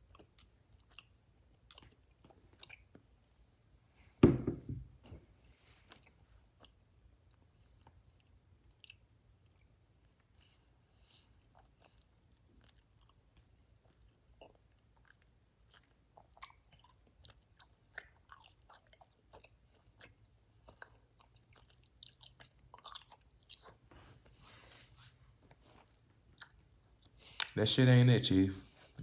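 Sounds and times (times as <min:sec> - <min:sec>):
chewing with wet mouth clicks: 0:00.0 - 0:03.2, 0:05.9 - 0:23.9, 0:26.2 - 0:27.6.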